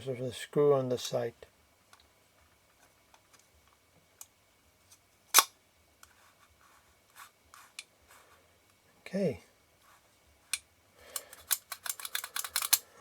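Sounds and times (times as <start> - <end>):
metal lens parts ticking: 11.2 - 12.8.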